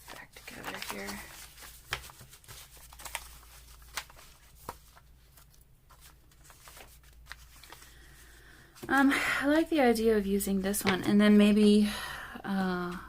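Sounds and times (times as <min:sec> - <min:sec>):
papers rustling: 0:00.0 - 0:08.9.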